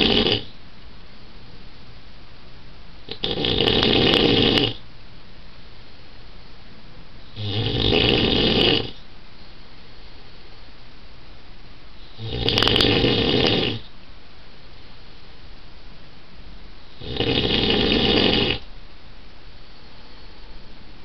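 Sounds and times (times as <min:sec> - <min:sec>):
man snoring loudly: 0:00.0 - 0:00.5, 0:03.1 - 0:04.8, 0:07.4 - 0:09.0, 0:12.2 - 0:13.8, 0:17.0 - 0:18.6.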